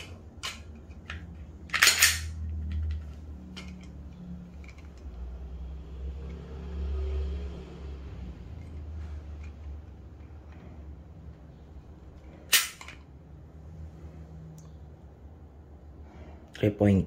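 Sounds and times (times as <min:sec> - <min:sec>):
handling clicks: 0:00.0 - 0:05.1.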